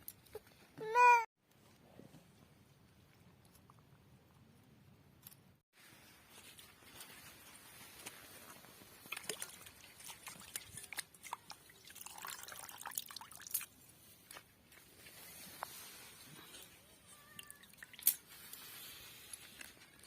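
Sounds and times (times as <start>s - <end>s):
water pouring and dripping: 6.4s - 13.9s, 17.1s - 18.6s.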